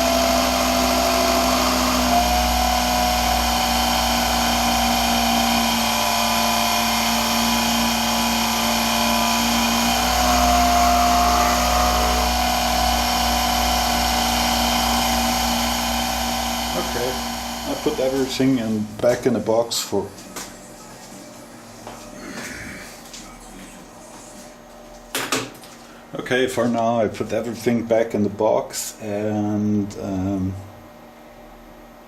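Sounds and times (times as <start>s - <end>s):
lathe motor hum and whine: 0.0s - 19.3s.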